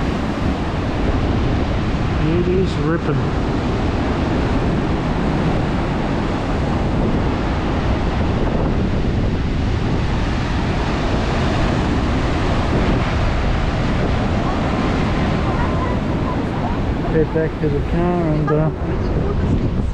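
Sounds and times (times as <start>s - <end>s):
ocean waves breaking: 0.0s - 19.9s
wind buffeting microphone: 0.0s - 19.9s.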